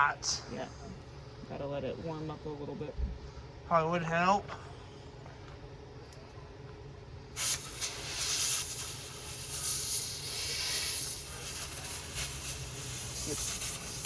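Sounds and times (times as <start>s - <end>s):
compressed air can hissing: 7.4s - 14.0s.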